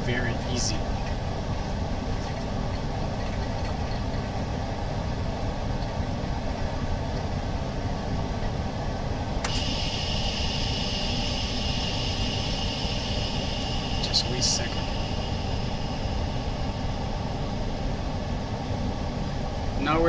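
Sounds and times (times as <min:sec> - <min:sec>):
machine low mechanical hum: 0:00.0 - 0:20.0
steady high hiss: 0:09.5 - 0:18.4.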